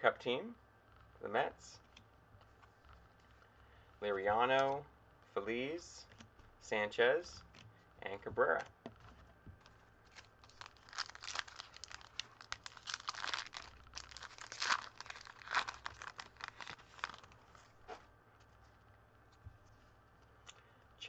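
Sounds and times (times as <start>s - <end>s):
card pack wrapper tearing and crinkling: 10.0s - 17.7s.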